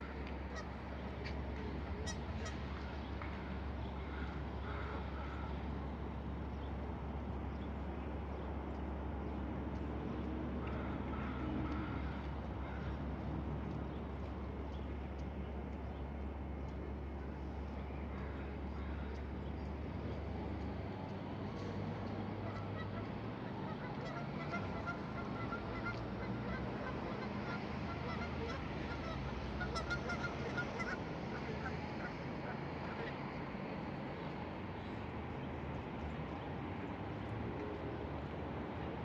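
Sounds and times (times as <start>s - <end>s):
faint bird calls: 2.0s - 5.6s.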